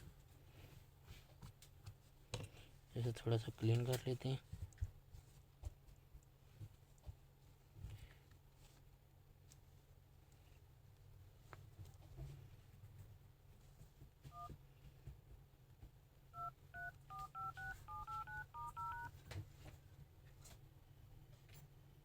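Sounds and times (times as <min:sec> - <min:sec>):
phone keypad tone beeps: 0:16.4 - 0:19.1.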